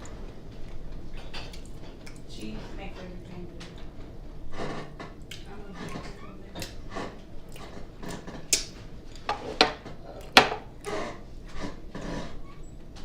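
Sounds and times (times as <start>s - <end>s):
tableware clicks and knocks: 8.0s - 10.7s.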